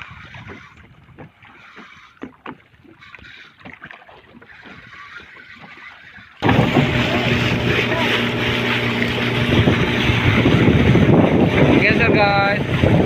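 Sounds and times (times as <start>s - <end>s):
wind noise: 0.0s - 1.6s, 6.4s - 13.0s
water lapping: 0.0s - 13.0s
boat engine running: 4.2s - 13.0s.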